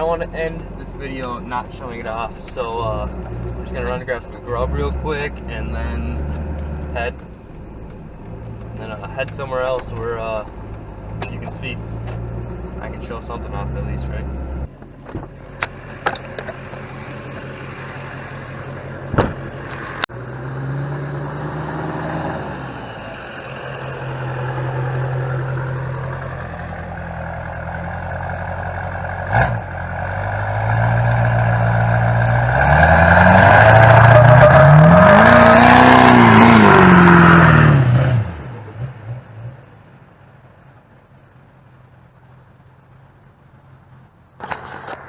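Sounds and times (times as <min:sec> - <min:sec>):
diesel truck engine revving: 0:00.0 - 0:14.7, 0:15.5 - 0:39.7
tires spinning: 0:00.0 - 0:45.0
sharp knocks: 0:19.1 - 0:19.5.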